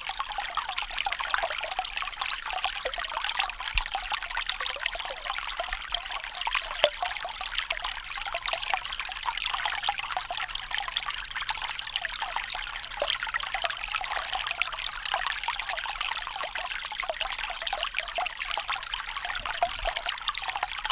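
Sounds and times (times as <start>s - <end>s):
stream flowing over stones: 19.1s - 20.9s.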